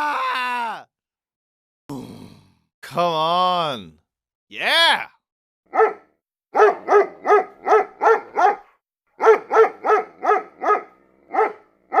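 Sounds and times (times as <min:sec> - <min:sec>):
dog barking: 0:05.7 - 0:12.0.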